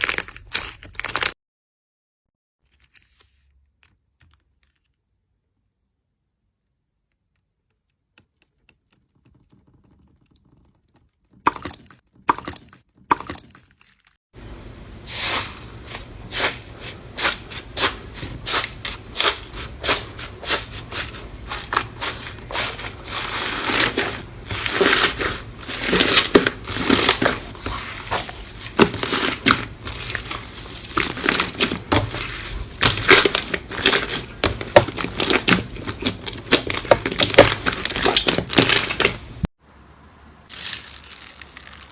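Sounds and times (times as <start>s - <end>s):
slime crackling and popping: 17.6s - 39.4s, 40.5s - 41.9s.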